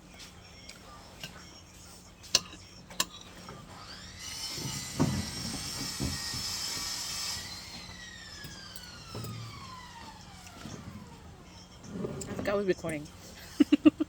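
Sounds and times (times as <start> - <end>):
small motor whining: 3.8 - 12.6.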